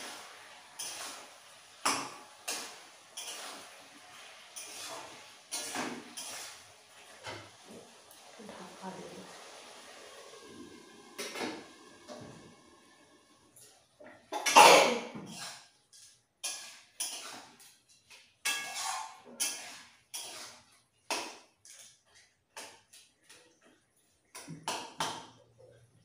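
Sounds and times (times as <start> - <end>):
person sneezing: 14.5 - 15.1.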